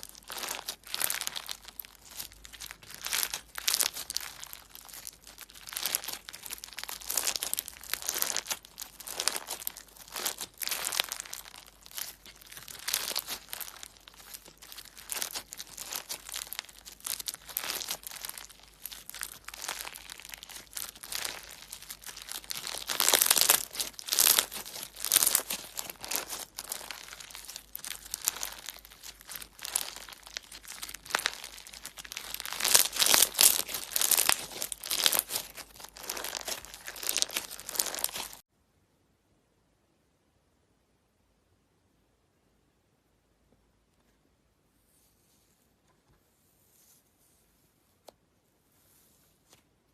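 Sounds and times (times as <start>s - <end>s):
slime crackling and popping: 0.0s - 38.4s.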